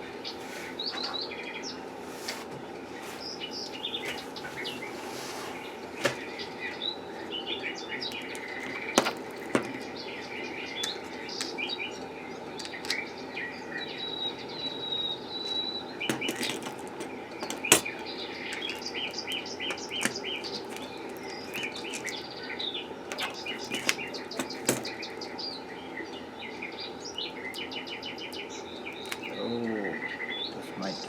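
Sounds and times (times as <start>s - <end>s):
small birds chirping: 0.0s - 31.0s
sharp clicks: 12.6s - 13.0s.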